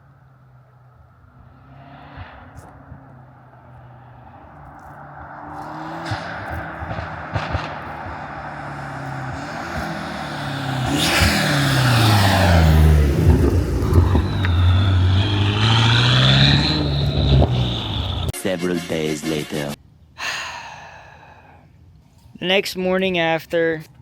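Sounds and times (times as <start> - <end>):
car engine revving: 0.9 - 18.4.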